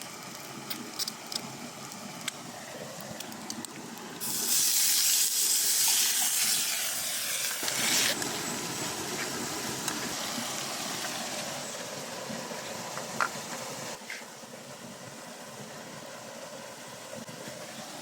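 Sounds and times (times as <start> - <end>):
loud even hiss: 4.2 - 8.7.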